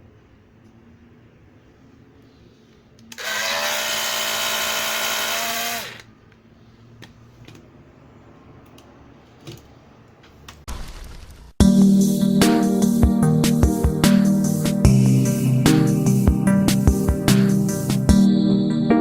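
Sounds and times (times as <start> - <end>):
hair dryer running: 3.2 - 6.1.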